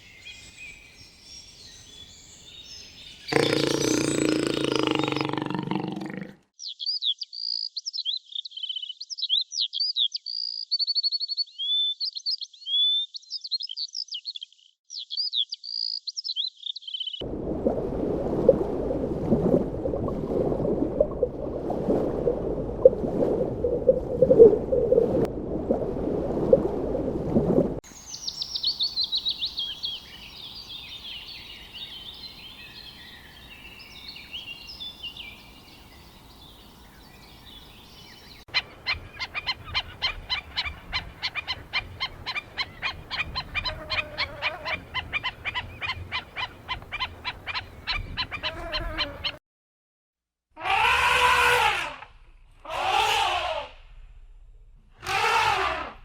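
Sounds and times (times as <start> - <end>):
chorus of small birds chirping: 0.0 - 6.1
songbird chirping and trilling: 0.0 - 17.2, 27.9 - 49.4.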